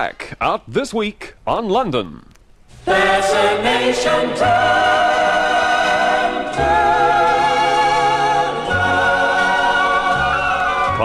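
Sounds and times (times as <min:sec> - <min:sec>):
backing accompaniment: 0:02.9 - 0:11.0
bass: 0:04.1 - 0:11.0.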